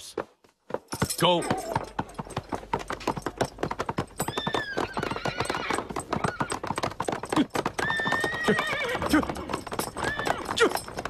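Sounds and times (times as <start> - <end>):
horse hooves clattering: 0.0 - 11.0
horse neighing shrilly: 4.2 - 6.6, 7.7 - 10.7.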